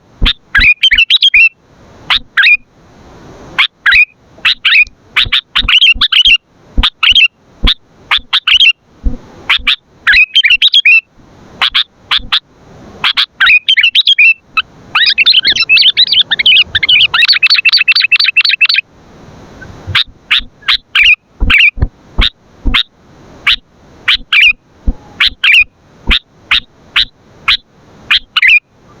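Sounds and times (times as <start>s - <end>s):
bulbul chirping and chattering: 3.9s - 8.7s, 13.1s - 14.4s, 15.0s - 18.8s, 19.9s - 28.6s.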